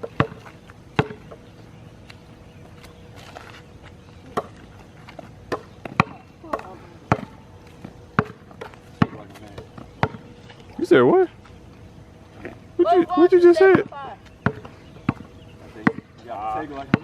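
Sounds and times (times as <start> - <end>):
basketball bouncing on hard court: 0.0 - 1.4, 5.5 - 10.2, 13.7 - 16.1.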